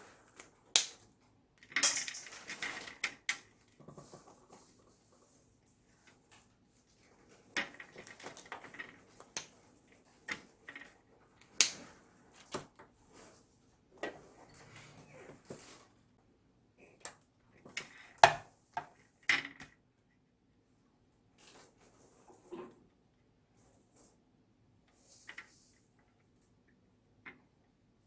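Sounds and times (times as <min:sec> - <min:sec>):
small parts and tools clattering: 0:01.6 - 0:04.2.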